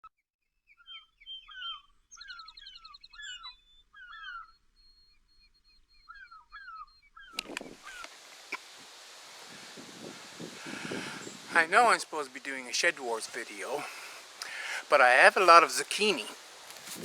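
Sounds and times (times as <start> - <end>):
wild birds singing and chirping: 0.7 - 17.0
clicks: 7.4 - 8.6
rustling: 13.1 - 17.0.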